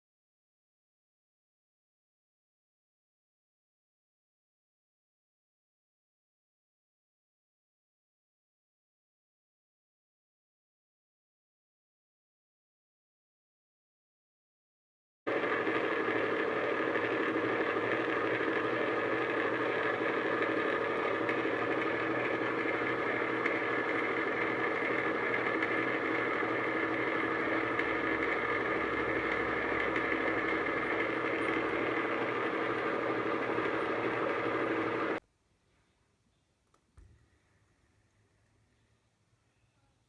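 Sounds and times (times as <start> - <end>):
metal lathe whining: 15.3 - 35.2.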